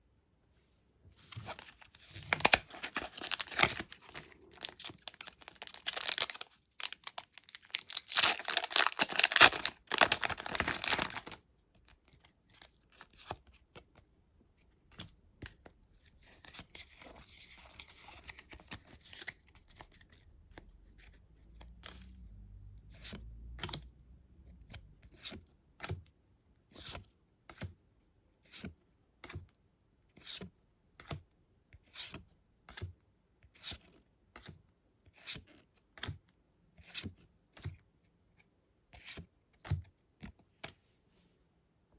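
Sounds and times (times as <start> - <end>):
foil wrapper crinkling and tearing: 1.6 - 11.4.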